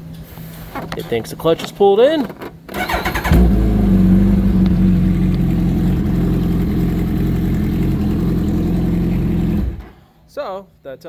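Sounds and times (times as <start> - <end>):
motorcycle engine idling: 2.8 - 10.0.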